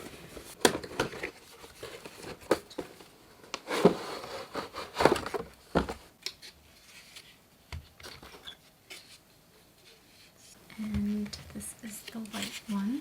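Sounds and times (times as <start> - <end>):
packaging rustling: 0.0 - 6.1.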